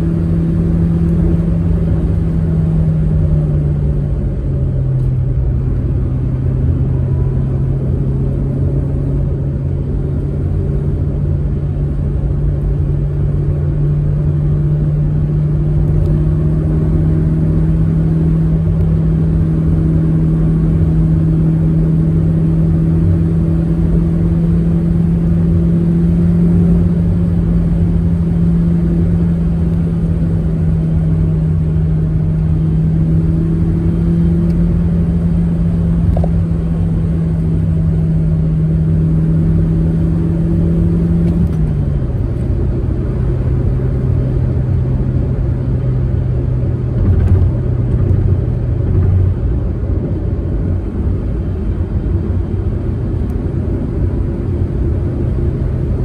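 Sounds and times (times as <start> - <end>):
car engine running: 0.0 - 56.0
road and tyre rumble: 0.0 - 56.0.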